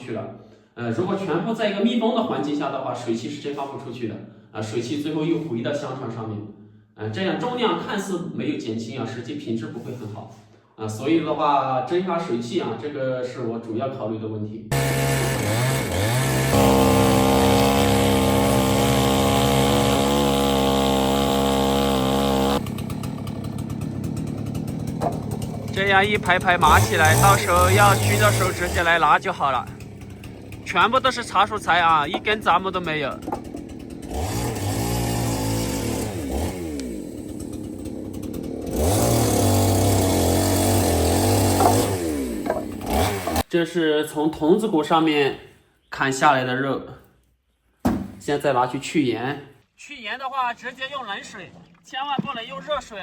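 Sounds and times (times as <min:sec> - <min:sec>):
chainsaw engine revving: 0:14.7 - 0:43.5.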